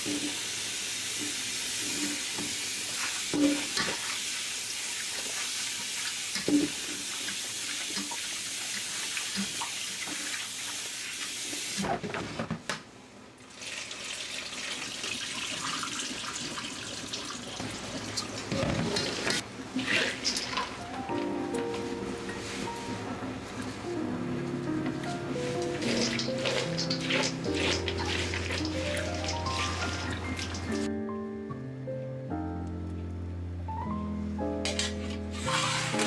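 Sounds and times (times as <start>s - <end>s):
tap water running into sink: 13.5s - 21.8s, 24.6s - 30.9s, 35.4s - 36.0s.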